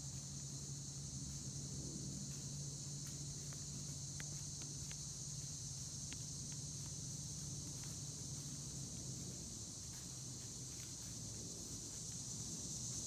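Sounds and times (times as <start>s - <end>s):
insects droning: 0.0s - 13.0s
faint ticks and snaps: 3.0s - 8.0s.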